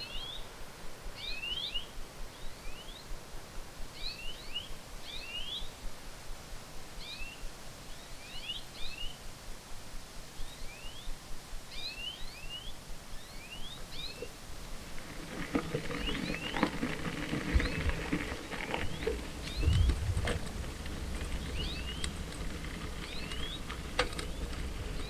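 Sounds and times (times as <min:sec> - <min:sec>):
faint background hiss: 0:00.0 - 0:25.0
birds chirping: 0:10.4 - 0:25.0.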